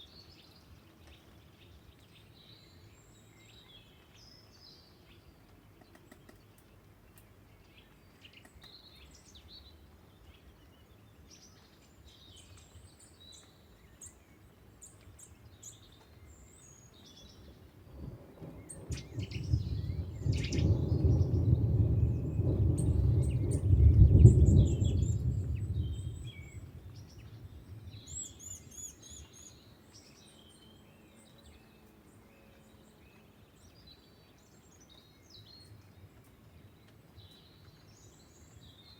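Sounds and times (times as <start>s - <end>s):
birds chirping: 0.1s - 38.9s
thunder rumbling: 17.8s - 28.2s.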